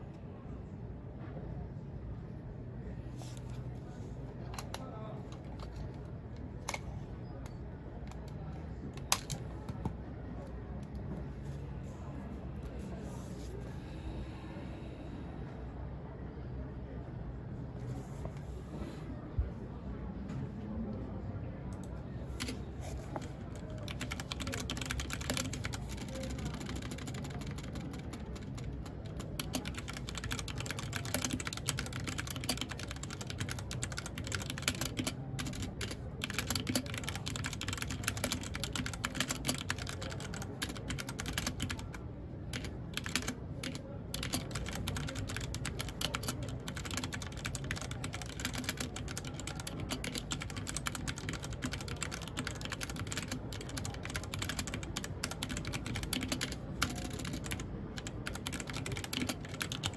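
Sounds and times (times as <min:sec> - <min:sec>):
mechanical keyboard typing: 0:09.0 - 0:09.9, 0:22.4 - 0:59.9.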